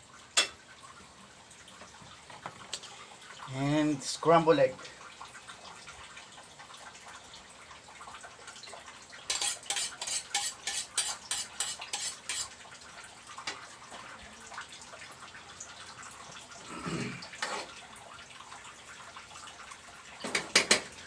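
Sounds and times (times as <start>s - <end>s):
metal utensil clattering on cookware: 9.3s - 12.5s, 20.2s - 20.9s.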